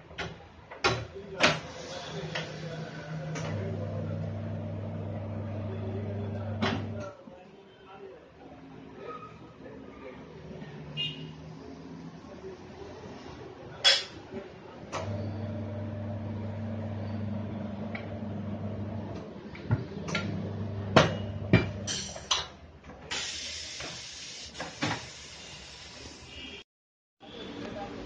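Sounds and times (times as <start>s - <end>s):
low machine hum: 3.5s - 7.0s, 15.0s - 19.2s.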